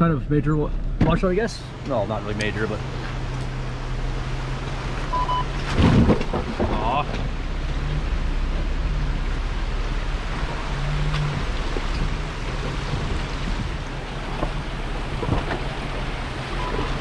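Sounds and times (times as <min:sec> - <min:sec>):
low engine drone: 0:00.0 - 0:17.0
tyres rumbling on gravel: 0:00.0 - 0:17.0.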